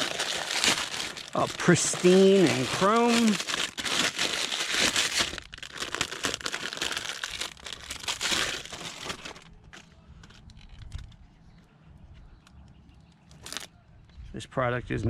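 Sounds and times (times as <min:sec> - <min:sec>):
packaging crinkling: 0:00.0 - 0:11.2, 0:13.3 - 0:13.7.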